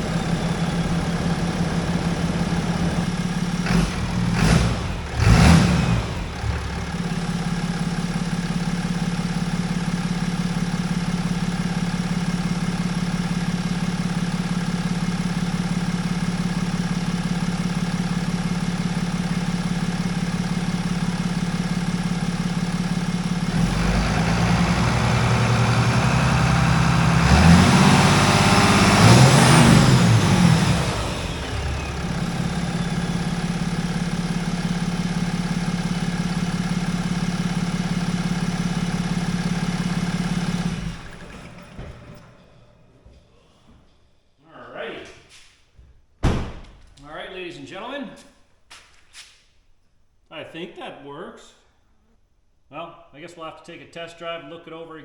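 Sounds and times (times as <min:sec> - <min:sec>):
diesel engine idling and revving: 0:00.0 - 0:43.0.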